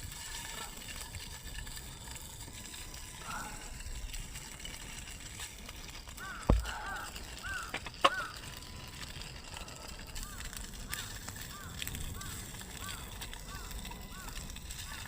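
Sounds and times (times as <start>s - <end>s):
bird calling in arched notes: 6.2s - 8.9s, 9.7s - 15.0s.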